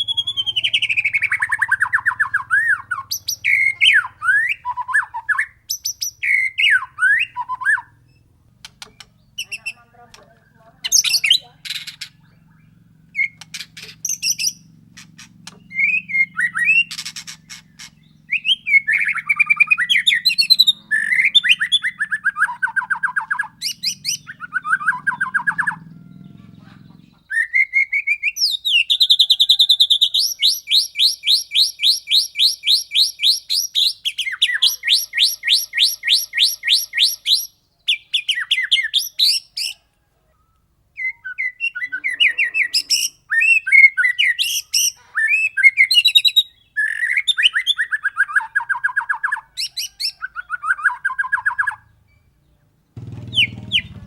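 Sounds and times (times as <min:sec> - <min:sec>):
bird singing whistled phrases: 0:00.0 - 0:09.8, 0:10.8 - 0:14.7, 0:15.4 - 0:25.8, 0:27.2 - 0:39.9, 0:41.0 - 0:51.9
bird rapid repeated notes: 0:10.9 - 0:25.8, 0:53.0 - 0:54.0.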